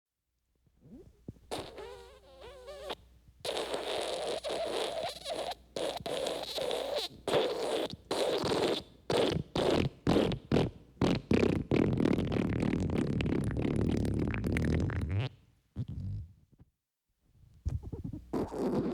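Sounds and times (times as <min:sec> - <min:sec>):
wet fart sounds: 0:00.8 - 0:16.5, 0:17.7 - 0:18.9.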